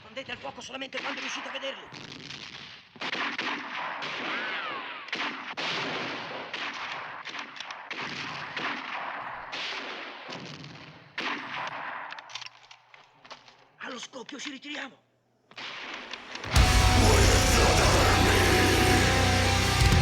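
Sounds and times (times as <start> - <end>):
heavy blasts: 16.5 - 20.0.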